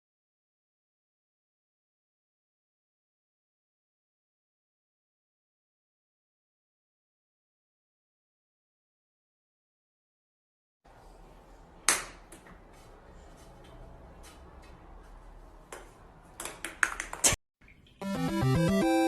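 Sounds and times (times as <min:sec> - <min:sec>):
music: 0:18.0 - 0:19.0.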